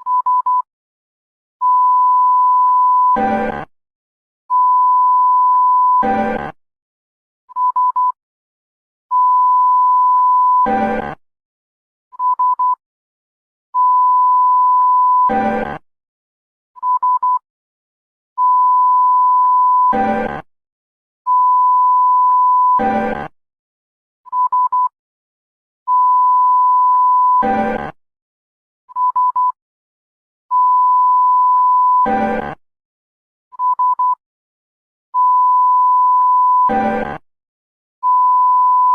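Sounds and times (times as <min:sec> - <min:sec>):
alarm beep tone: 0:01.6 - 0:03.7, 0:09.1 - 0:11.2, 0:13.8 - 0:15.8, 0:18.4 - 0:20.5, 0:21.3 - 0:23.3, 0:25.9 - 0:28.0, 0:30.6 - 0:32.6, 0:35.2 - 0:37.2, 0:38.0 - 0:38.9.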